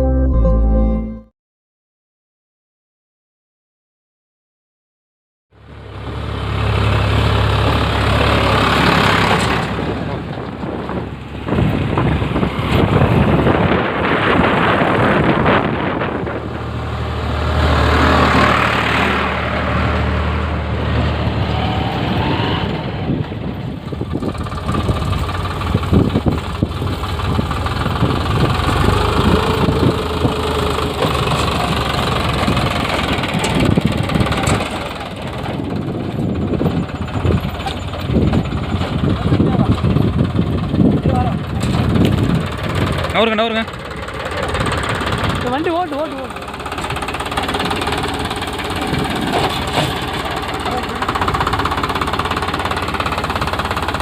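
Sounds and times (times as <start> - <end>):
tractor diesel engine running: 5.6 - 54.0
knocks and clatter: 46.7 - 50.5.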